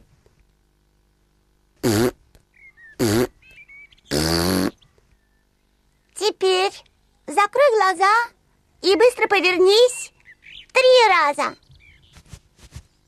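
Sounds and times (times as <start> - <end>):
cartoon piglet hiccuping: 4.1 - 4.8.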